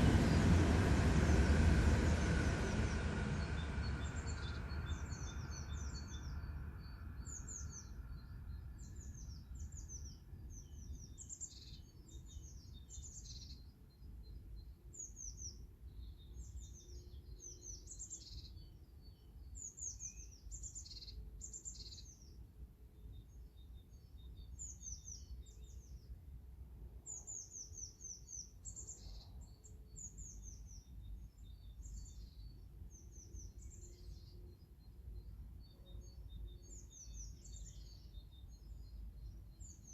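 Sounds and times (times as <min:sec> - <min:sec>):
low rumble: 0:00.0 - 0:11.3
small birds chirping: 0:00.0 - 0:26.2, 0:27.0 - 0:39.9.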